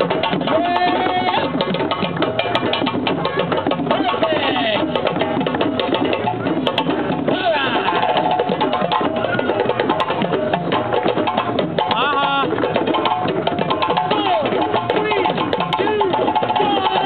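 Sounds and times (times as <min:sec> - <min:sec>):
group drumming on hand drums: 0:00.0 - 0:17.0
voices shouting: 0:07.3 - 0:09.8, 0:14.0 - 0:17.0.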